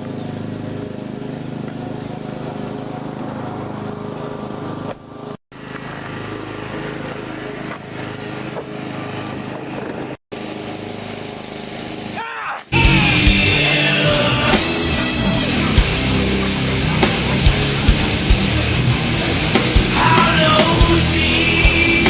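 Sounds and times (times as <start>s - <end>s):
small engine running: 0.0s - 22.0s.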